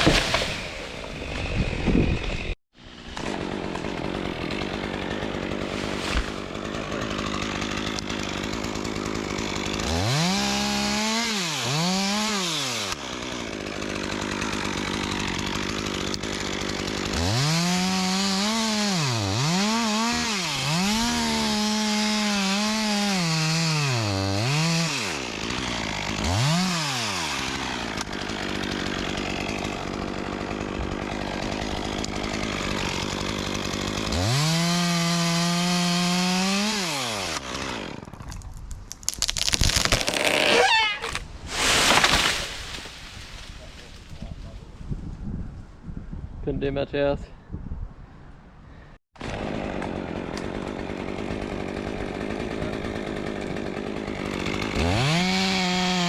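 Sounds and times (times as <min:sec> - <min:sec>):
chainsaw revving and cutting wood: 0:00.0 - 0:44.1, 0:49.2 - 0:56.0.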